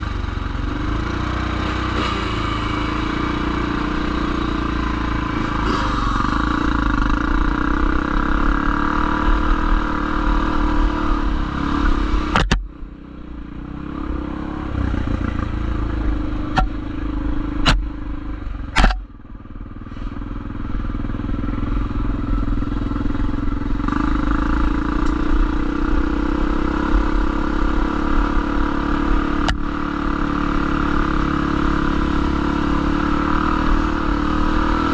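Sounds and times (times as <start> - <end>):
motorcycle engine running: 0.0 - 34.9
sharp clicks: 12.3 - 12.6, 18.8 - 19.0.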